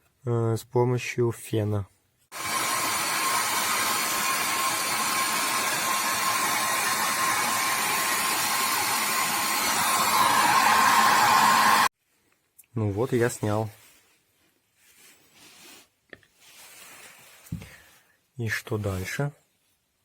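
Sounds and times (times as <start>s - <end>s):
hair dryer blowing: 2.3s - 11.9s.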